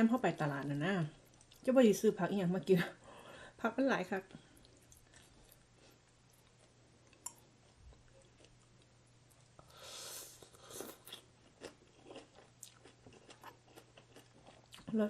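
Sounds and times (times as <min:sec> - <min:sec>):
chewing and crunching food: 0:01.1 - 0:01.8, 0:04.4 - 0:09.7, 0:10.4 - 0:15.0.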